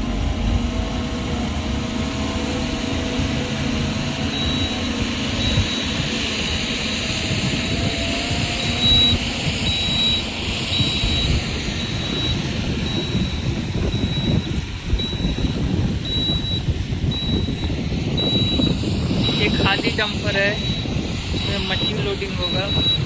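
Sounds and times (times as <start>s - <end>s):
heavy machinery engine rumbling: 0.0s - 23.0s
reversing alarm beeping: 2.2s - 23.0s.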